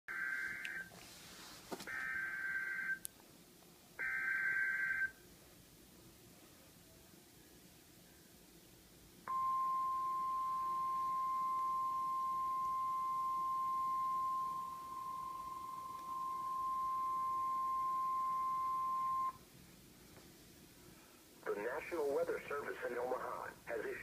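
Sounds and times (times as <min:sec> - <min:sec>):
steady electronic warning tone: 0:09.3 - 0:19.4.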